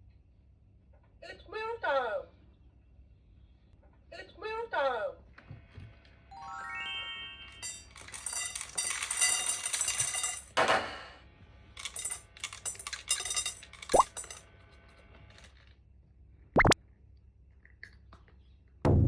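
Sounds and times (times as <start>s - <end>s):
food clinking into metal bowls: 7.5s - 11.0s, 11.8s - 14.5s.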